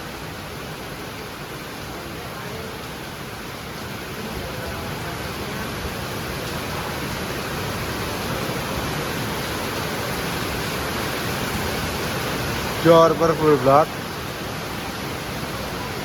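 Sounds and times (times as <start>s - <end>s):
steady rushing noise: 3.1s - 16.0s.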